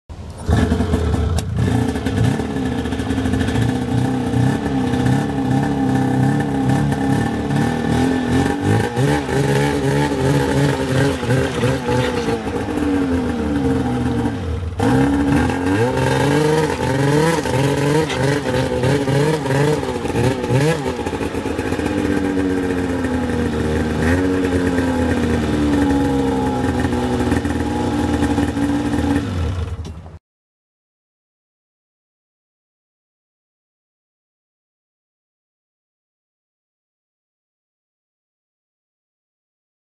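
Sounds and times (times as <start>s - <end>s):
snowmobile engine revving: 0.4s - 29.8s.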